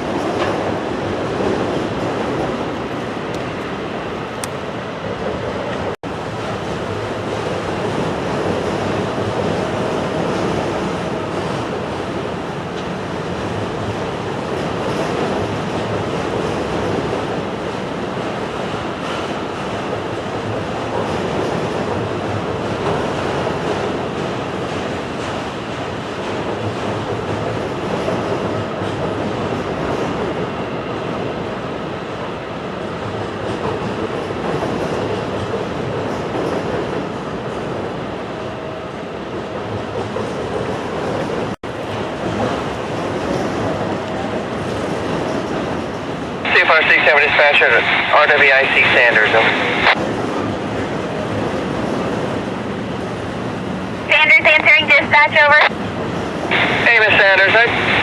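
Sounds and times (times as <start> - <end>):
train wheels clattering on rails: 7.2 - 31.3, 32.8 - 38.0.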